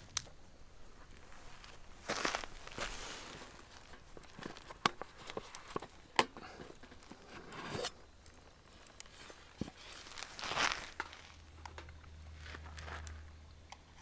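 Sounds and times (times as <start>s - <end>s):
handling clicks and rustling: 0.0s - 14.0s.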